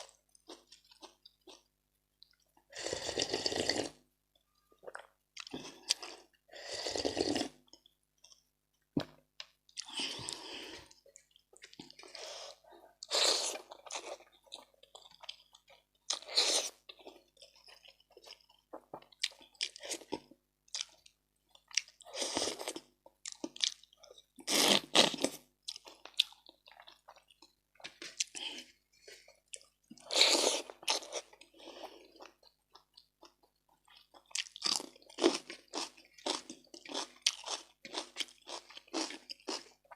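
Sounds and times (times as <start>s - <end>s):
wet chewing and crunching: 12.9s - 39.9s.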